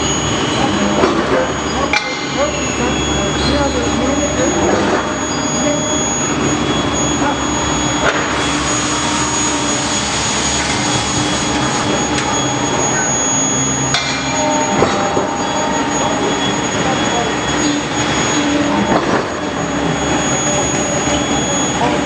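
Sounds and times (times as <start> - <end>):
high-pitched furnace whine: 0.0 - 22.0
loud machine noise: 0.0 - 22.0
sharp metallic clanks: 13.9 - 15.3.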